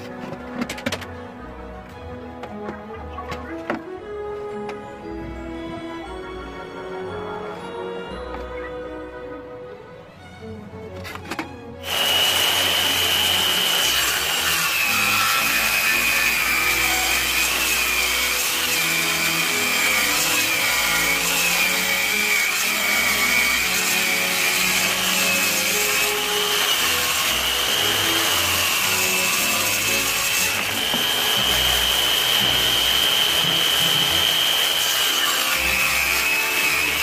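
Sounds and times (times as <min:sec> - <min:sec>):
circular saw cutting wood: 0:11.8 - 0:37.0.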